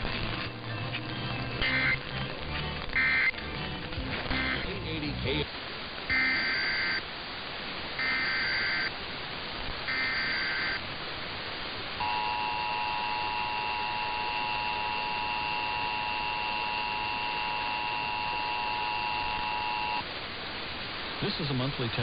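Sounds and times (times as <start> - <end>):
shrill buzzing data bursts: 1.6 - 2.0, 2.9 - 3.4, 4.1 - 5.5, 6.1 - 7.1, 8.0 - 9.0, 9.7 - 10.9, 12.0 - 20.1
two-tone attention signal: 4.3 - 4.7, 6.1 - 7.0, 8.0 - 8.9, 9.9 - 10.8, 12.0 - 20.0.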